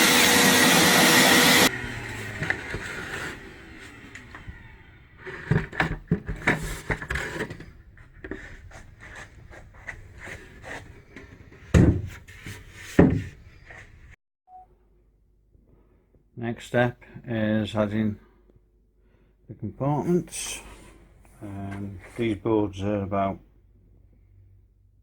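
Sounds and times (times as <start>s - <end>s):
wooden boards knocking together: 11.7s - 12.3s, 12.9s - 13.4s.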